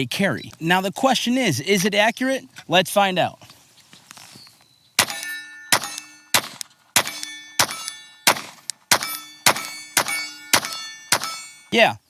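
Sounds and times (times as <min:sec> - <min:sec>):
pistol shots: 0:05.0 - 0:11.7.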